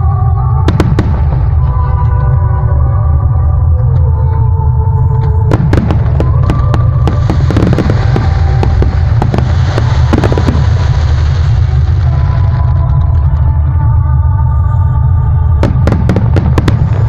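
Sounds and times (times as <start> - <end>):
low rumble: 0.0 - 17.0
fireworks bangs: 0.6 - 2.0, 5.5 - 13.4, 15.6 - 17.0
fireworks crackling hiss: 5.6 - 13.4.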